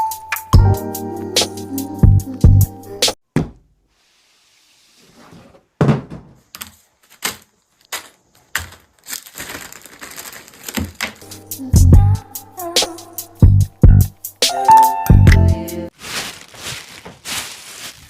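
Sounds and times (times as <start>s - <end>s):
knocks and thuds: 3.3s - 3.6s, 5.8s - 6.4s
music with strong beat: 12.8s - 15.7s.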